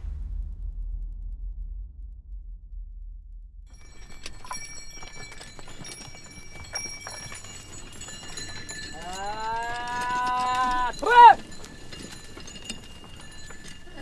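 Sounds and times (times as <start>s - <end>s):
animal bells ringing: 3.7s - 14.0s
hooves clopping: 3.7s - 14.0s
wooden cart knocking and rattling: 3.8s - 14.0s
man calling: 8.9s - 11.7s.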